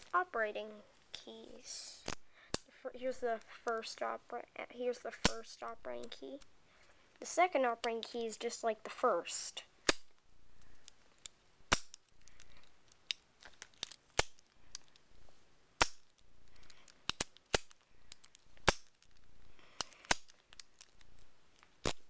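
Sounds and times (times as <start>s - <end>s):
padlock clicking with key: 16.6s - 19.2s.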